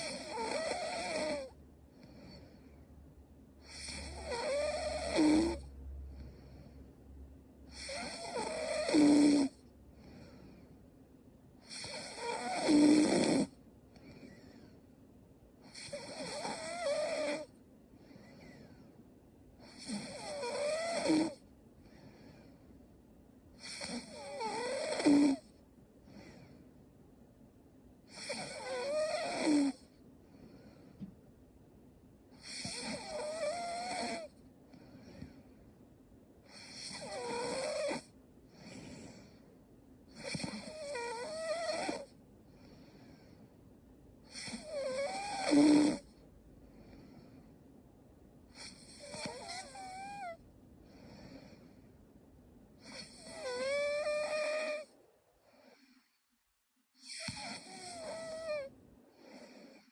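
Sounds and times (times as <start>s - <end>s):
woman snoring: 0.0s - 2.7s, 3.6s - 6.8s, 7.7s - 10.7s, 11.6s - 14.7s, 15.6s - 18.9s, 19.6s - 22.7s, 23.6s - 26.6s, 28.1s - 31.1s, 32.4s - 35.4s, 36.4s - 39.4s, 40.1s - 43.4s, 44.2s - 46.2s, 48.5s - 51.8s, 52.8s - 54.9s, 57.0s - 59.9s.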